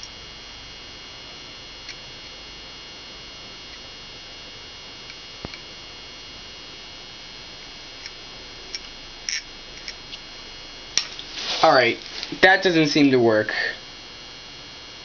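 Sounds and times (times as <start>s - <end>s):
high-pitched background whine: 0.0s - 15.0s.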